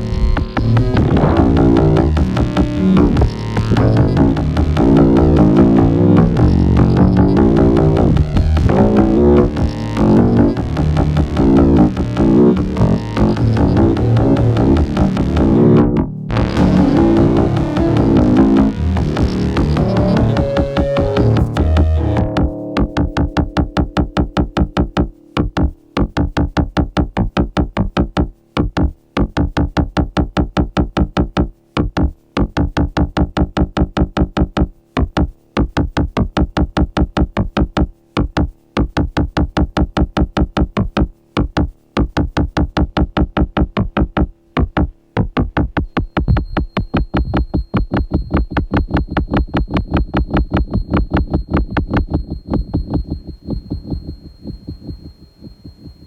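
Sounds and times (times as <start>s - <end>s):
synthesizer sequenced pattern: 0.0s - 56.0s
steady high synth tone: 45.9s - 56.0s.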